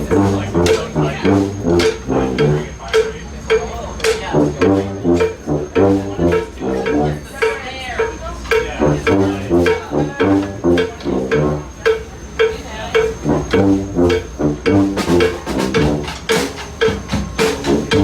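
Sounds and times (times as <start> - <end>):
low brass bass line: 0.0 - 2.9, 4.3 - 7.4, 8.8 - 11.8, 13.2 - 16.5, 17.6 - 18.0
brass street band playing: 0.0 - 18.0
drum hits: 0.0 - 18.0.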